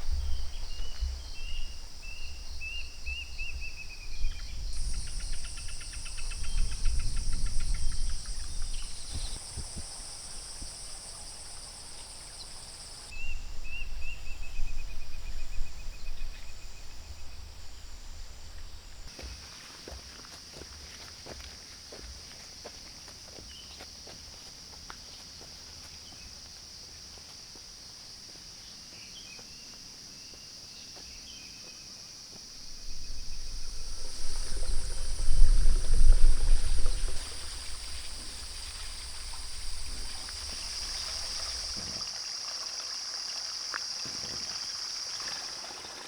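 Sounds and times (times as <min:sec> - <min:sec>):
bird calling: 0:00.0 - 0:14.6, 0:32.7 - 0:42.0
insects chirring: 0:00.0 - 0:46.0
low rumble: 0:32.6 - 0:41.8.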